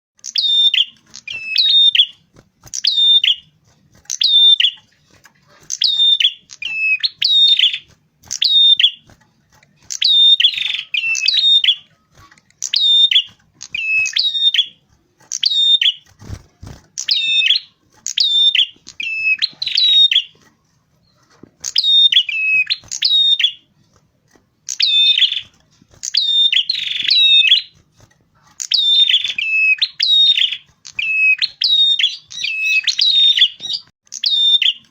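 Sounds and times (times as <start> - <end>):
songbird chirping: 0.2 - 34.9.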